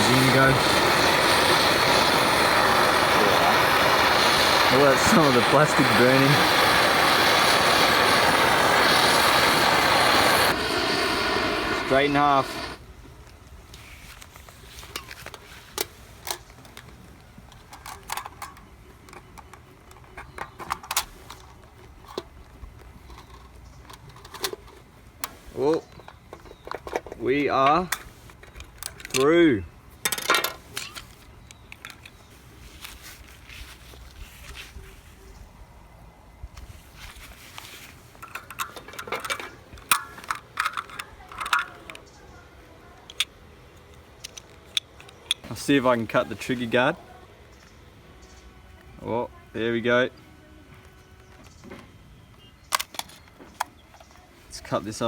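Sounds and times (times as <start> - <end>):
hot knife crackling through plastic: 0.0 - 18.6, 36.6 - 42.2.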